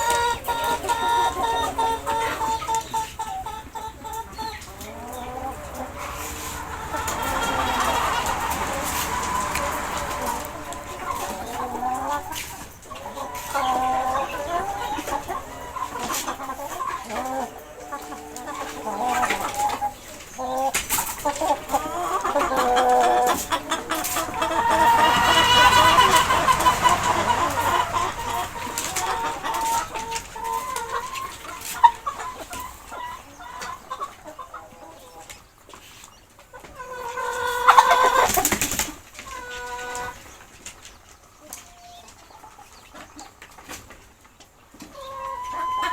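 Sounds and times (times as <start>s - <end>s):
loud chicken call: 0.0s - 34.2s, 45.0s - 45.9s
chickens clucking: 0.0s - 45.9s.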